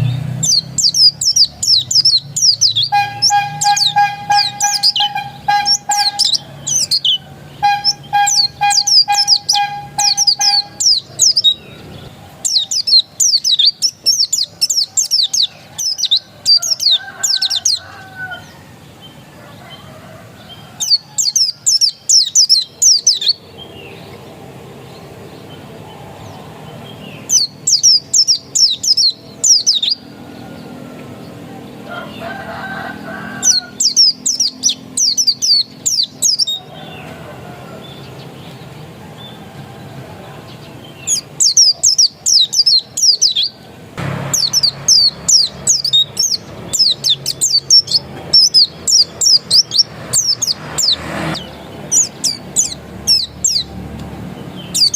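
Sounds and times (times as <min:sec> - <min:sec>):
songbird singing high notes: 0:00.0 - 0:16.2, 0:27.0 - 0:30.1, 0:44.2 - 0:53.7, 0:54.6 - 0:54.9.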